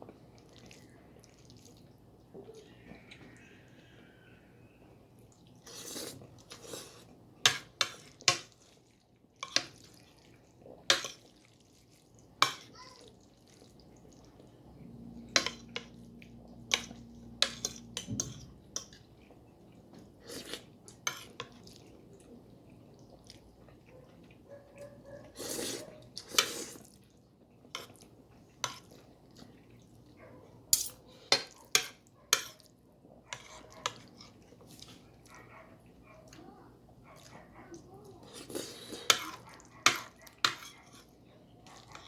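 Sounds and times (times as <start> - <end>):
cutlery scraping a plate: 20.5 - 21.5, 33.3 - 34.0, 38.6 - 41.1.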